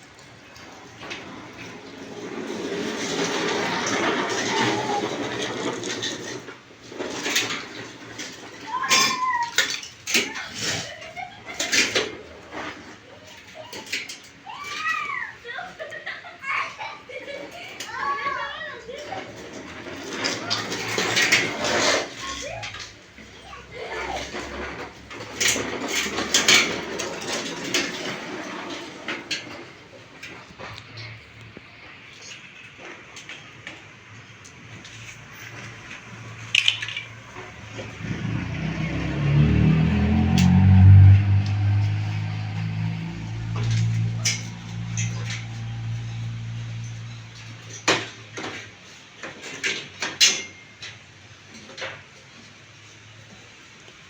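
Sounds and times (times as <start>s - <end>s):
low steady hum: 40.0s - 48.0s.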